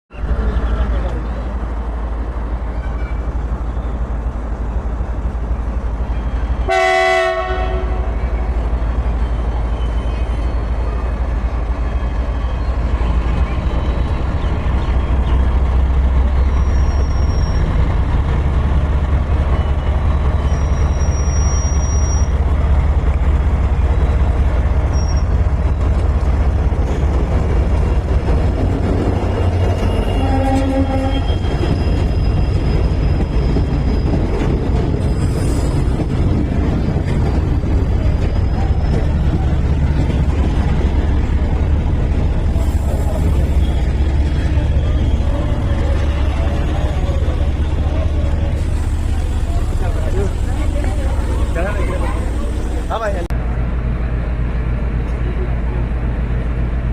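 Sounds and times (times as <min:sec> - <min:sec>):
train rumbling: 0:00.1 - 0:56.9
train horn blast: 0:06.7 - 0:08.2, 0:30.0 - 0:31.4.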